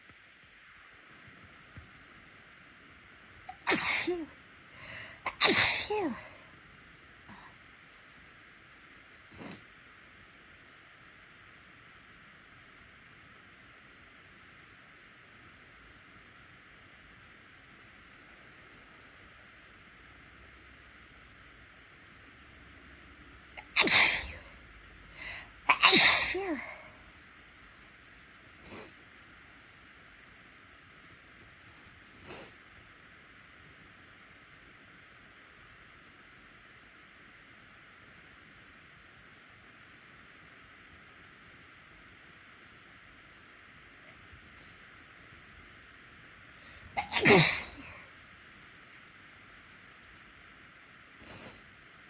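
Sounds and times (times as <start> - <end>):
woman sneezing: 3.5 - 6.4, 23.6 - 24.6, 25.2 - 27.0, 46.9 - 48.1.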